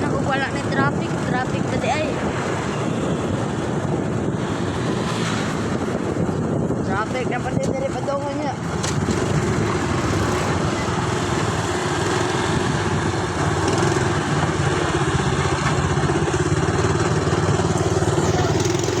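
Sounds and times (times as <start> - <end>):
road noise: 0.0 - 19.0
motorcycle engine running: 7.4 - 19.0.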